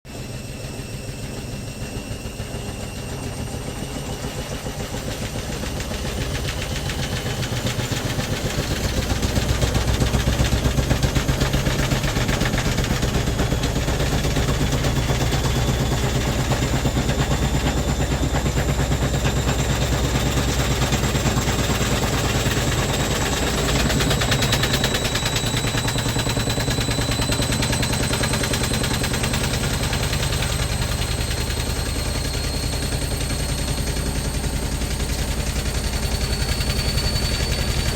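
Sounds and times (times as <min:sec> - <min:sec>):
washing machine spinning: 0:00.1 - 0:37.9
machine rattling and knocking: 0:04.7 - 0:37.9.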